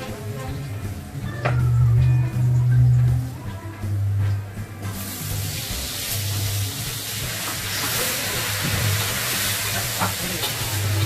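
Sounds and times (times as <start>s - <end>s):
background music with low bass: 0.0s - 11.0s
food sizzling in a hot pan: 4.8s - 11.0s.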